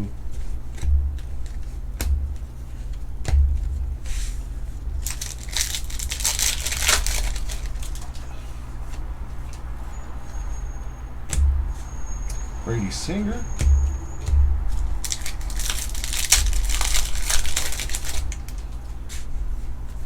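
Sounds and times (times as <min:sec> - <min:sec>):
foil wrapper crinkling: 0:04.9 - 0:09.0, 0:14.2 - 0:19.0
sharp clicks: 0:11.3 - 0:18.9.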